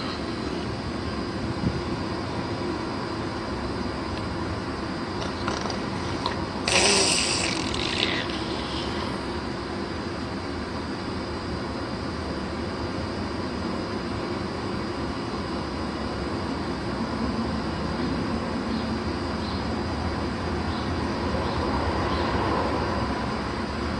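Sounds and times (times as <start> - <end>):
steady rumbling noise: 0.0 - 13.4.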